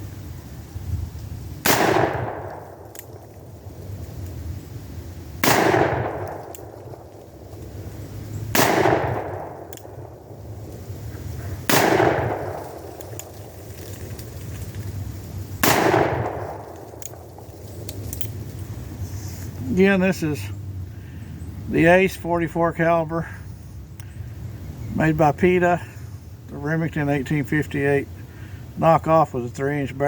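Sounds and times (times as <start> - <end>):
revolver shots echoing: 1.6 - 2.8, 5.4 - 6.8, 8.5 - 10.2, 11.6 - 12.8.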